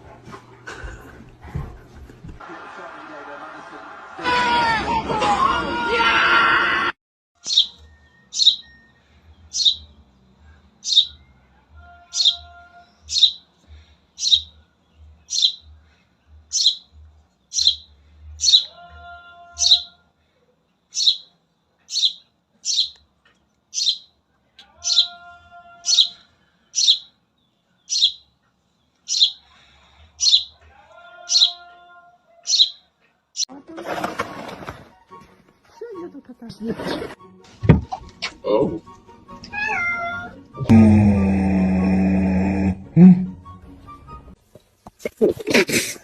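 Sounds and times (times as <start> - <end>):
bird chirping: 7.4 - 11.4, 12.1 - 13.5, 14.2 - 18.7, 19.6 - 20.0, 20.8 - 25.2, 25.9 - 29.6, 30.2 - 30.6, 31.3 - 31.6, 32.4 - 33.5
lower steady bird call: 7.4 - 11.4, 25.9 - 30.6.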